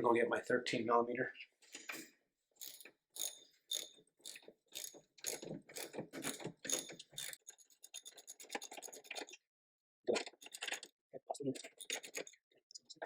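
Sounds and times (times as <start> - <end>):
socket ratchet clicking: 2.6 - 9.3, 11.6 - 12.4.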